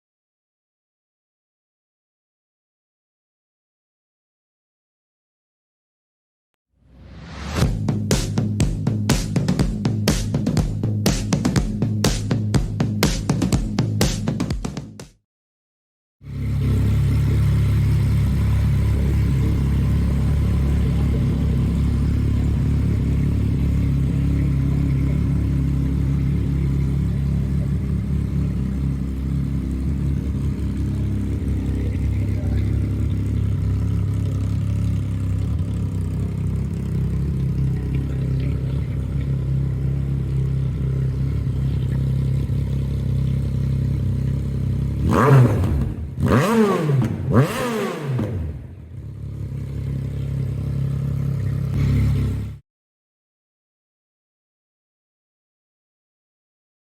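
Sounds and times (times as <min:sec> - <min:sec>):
motorcycle engine idling and revving: 0:07.0 - 0:15.1, 0:16.2 - 0:52.6.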